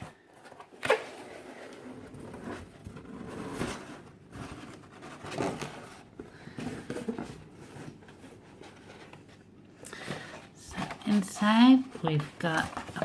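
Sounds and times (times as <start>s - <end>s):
cardboard scraping and rustling: 0.0s - 9.5s, 10.1s - 13.0s.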